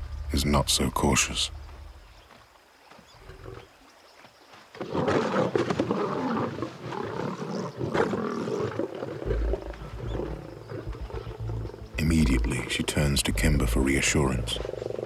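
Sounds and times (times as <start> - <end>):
lions snarling: 4.8 - 15.0.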